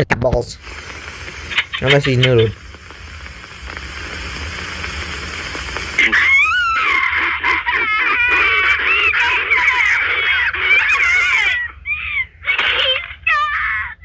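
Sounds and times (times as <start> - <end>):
high-pitched animal-like screeching: 1.5 - 2.6, 6.0 - 12.6.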